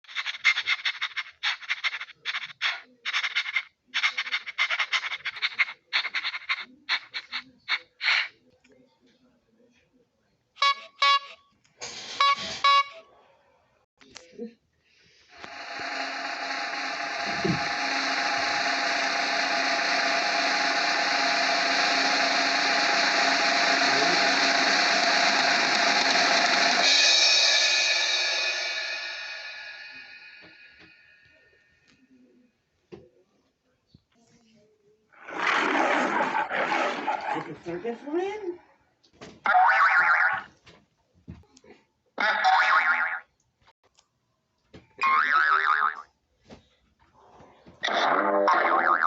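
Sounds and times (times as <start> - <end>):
small electric motor whirring: 15.3 - 27.1
rasping croak-like pulses: 15.3 - 27.2, 39.5 - 40.5.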